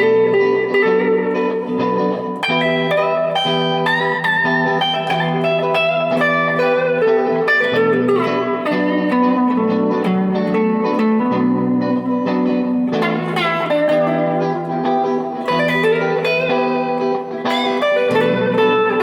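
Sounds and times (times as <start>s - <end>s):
electric guitar jam: 0.0s - 19.0s.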